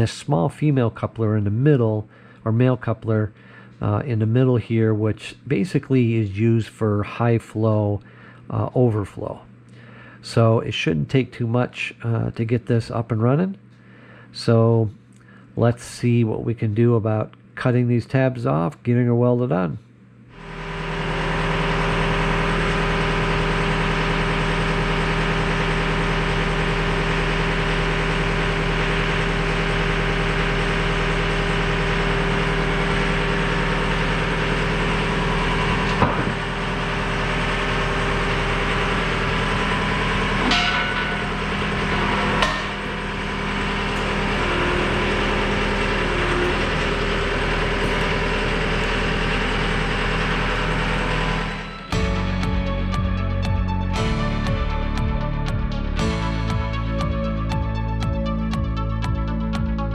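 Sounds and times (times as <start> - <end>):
engine idling: 20.4 - 52.6
sharp knocks: 40.4 - 46.8.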